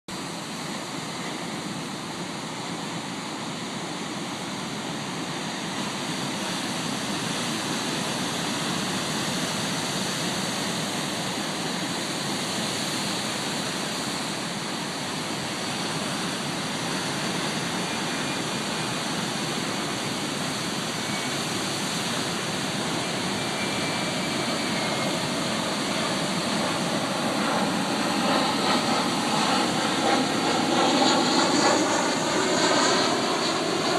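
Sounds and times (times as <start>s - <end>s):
jet aircraft overhead: 0.1s - 33.9s.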